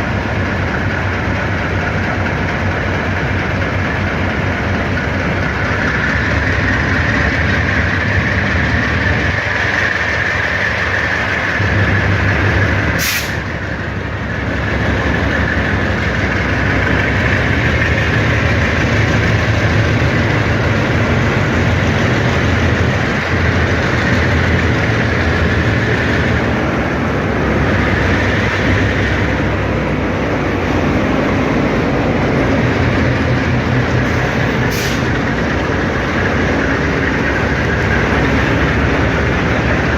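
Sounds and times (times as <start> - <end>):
train wheels on rails: 0.0 - 39.9.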